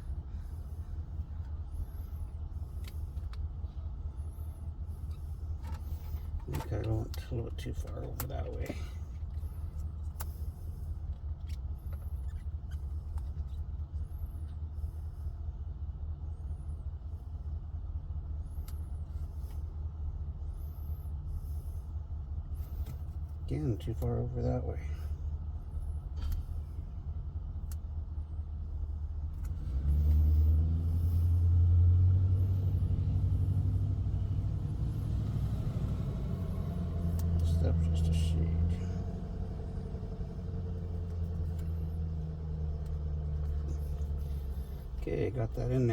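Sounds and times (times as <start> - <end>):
truck engine idling: 0.0 - 45.9
light clicks and taps: 37.0 - 37.5.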